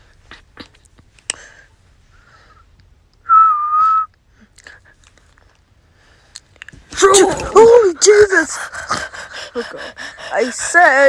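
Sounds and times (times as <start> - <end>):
person whistling a note: 3.3 - 4.2.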